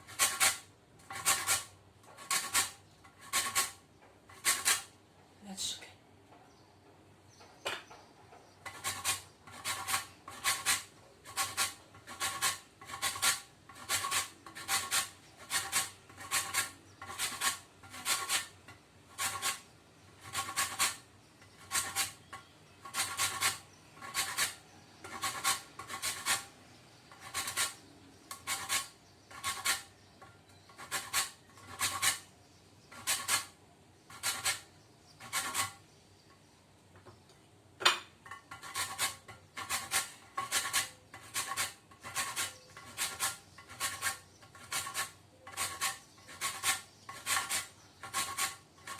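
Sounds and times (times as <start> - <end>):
grater rasping lemon peel: 8.7 - 19.6, 20.2 - 26.5, 27.1 - 29.9, 30.8 - 32.3, 34.1 - 35.8, 38.5 - 48.9.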